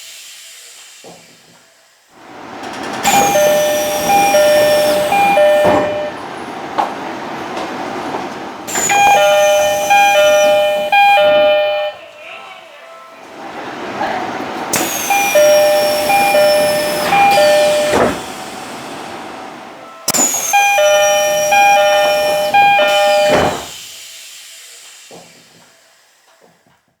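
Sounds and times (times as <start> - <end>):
sliding doors moving: 2.2 - 12.2, 13.2 - 23.9
doors thumping shut: 3.0 - 12.0, 14.8 - 18.4, 20.6 - 23.8
high-low ding-dong door chime: 3.1 - 6.2, 8.8 - 12.0, 15.1 - 18.3, 20.2 - 23.7
falling whistle: 20.1 - 23.8.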